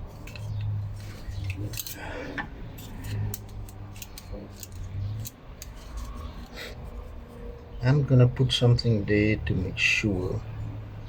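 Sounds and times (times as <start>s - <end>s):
metallic clicks of lock parts: 0.2s - 6.6s.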